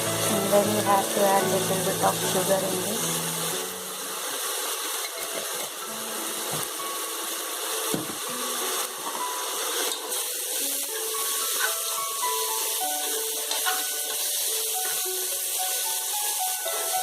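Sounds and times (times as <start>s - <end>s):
vegetables sizzling in a pan: 0.0s - 17.0s
knock: 7.9s - 8.2s.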